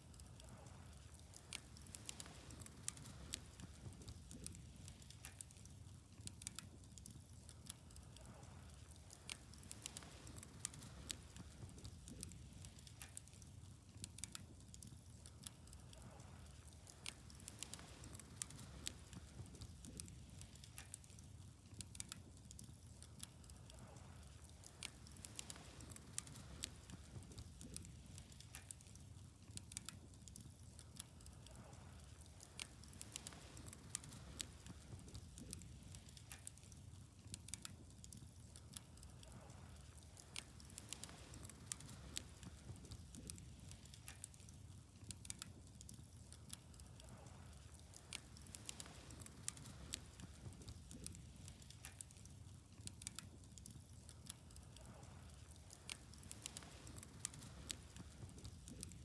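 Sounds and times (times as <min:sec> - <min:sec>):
wood fire crackling and popping: 0:00.0 - 0:59.0.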